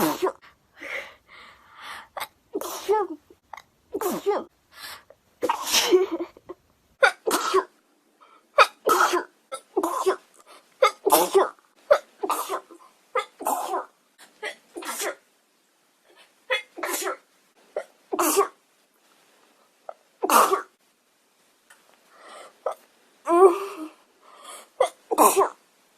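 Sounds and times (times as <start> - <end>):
woman sneezing: 0.0 - 0.4, 5.4 - 6.1.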